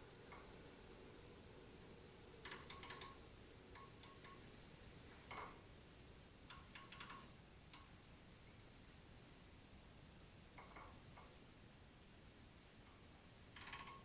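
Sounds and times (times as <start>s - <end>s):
faint light ticks: 2.4s - 4.5s, 6.4s - 8.0s, 12.8s - 14.0s.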